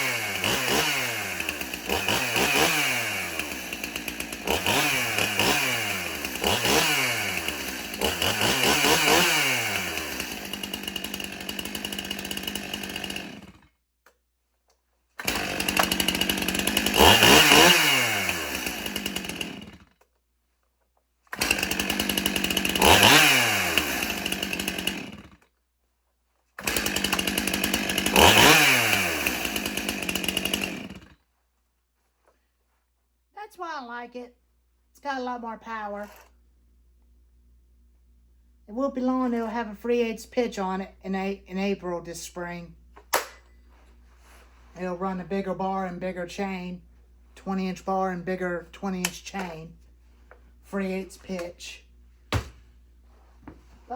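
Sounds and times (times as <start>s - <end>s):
chainsaw engine revving: 0.0s - 13.7s, 15.2s - 19.9s, 21.3s - 25.4s, 26.6s - 31.2s, 47.4s - 49.8s, 50.6s - 52.5s.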